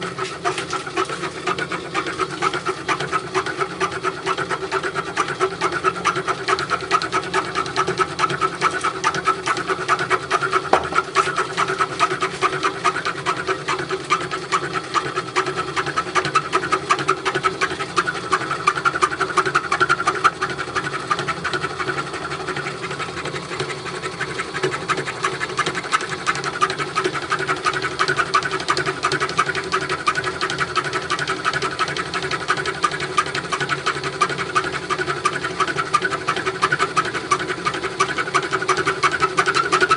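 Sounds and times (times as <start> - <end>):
metalworking machine clattering: 7.0 - 15.8.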